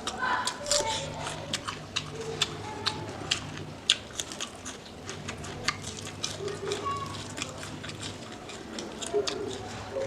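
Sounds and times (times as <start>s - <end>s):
person chewing with wet smacks: 0.0s - 10.0s.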